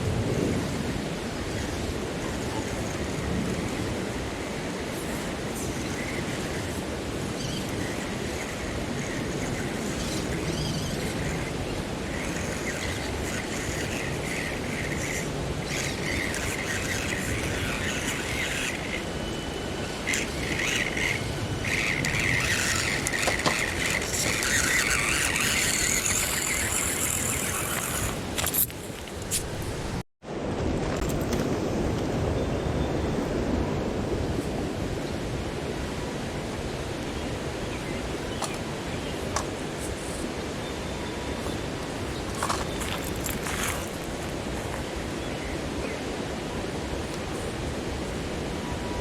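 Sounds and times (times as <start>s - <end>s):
small electric motor whining: 0.0s - 29.7s, 33.9s - 49.0s
steady outdoor hiss: 0.0s - 49.0s.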